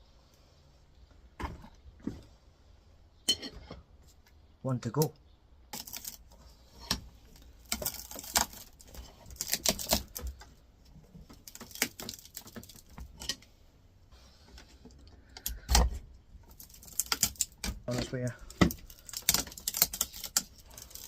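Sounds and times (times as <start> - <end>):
metal tools prying and scraping: 3.3 - 3.8.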